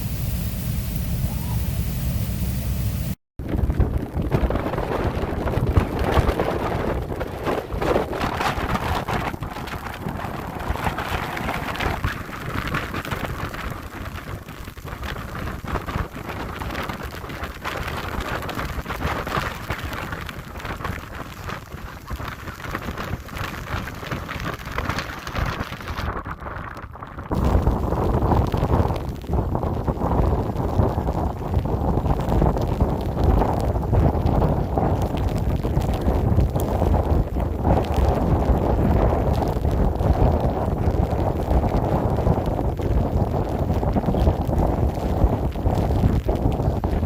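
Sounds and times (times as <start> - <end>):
gusting wind: 0.0 - 47.0
heavy rain falling: 0.0 - 47.0.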